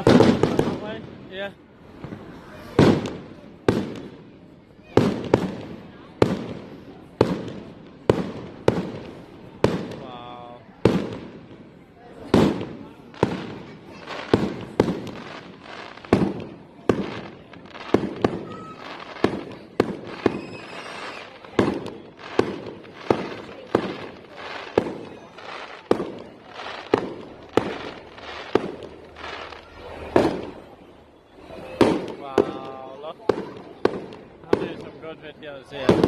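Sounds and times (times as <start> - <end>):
fireworks bangs: 0.0 - 36.0
firework whistle: 18.0 - 22.5.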